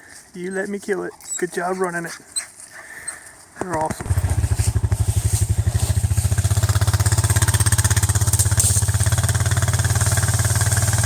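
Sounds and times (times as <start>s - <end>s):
small engine idling: 3.9s - 11.0s.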